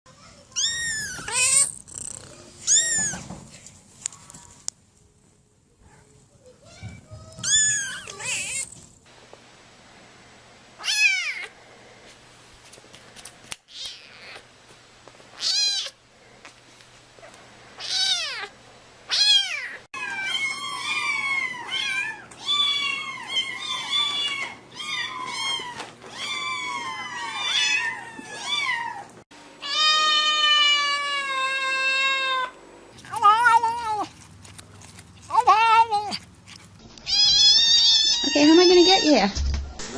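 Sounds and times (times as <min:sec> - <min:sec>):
cats meowing: 0:00.3 - 0:03.4, 0:06.6 - 0:08.8, 0:10.8 - 0:11.5, 0:15.4 - 0:16.0, 0:17.8 - 0:18.5, 0:19.1 - 0:34.1, 0:37.0 - 0:39.3.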